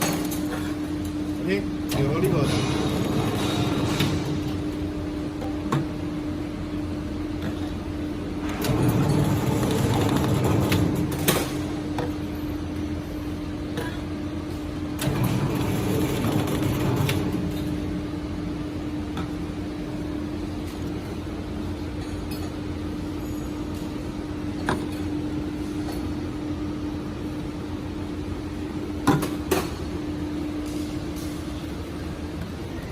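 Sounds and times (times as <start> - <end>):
machine motor hum: 1.1 - 13.6, 14.7 - 20.5.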